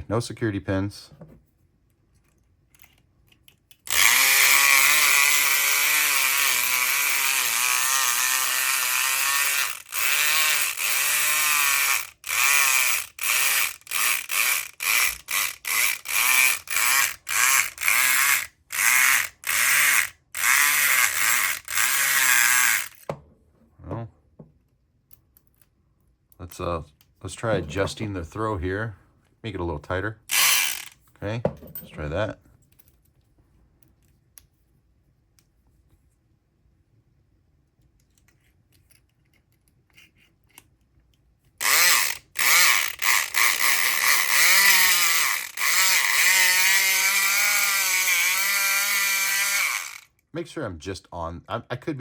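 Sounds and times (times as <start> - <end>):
electric pick gun buzzing: 3.9 - 23.1, 30.3 - 31.0, 41.6 - 50.2.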